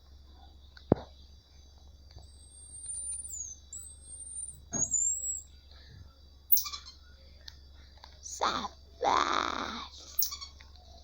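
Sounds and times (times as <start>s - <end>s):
high insect drone: 0.0s - 11.0s
marmosets whistling: 2.2s - 5.6s, 6.5s - 7.0s, 9.9s - 10.6s.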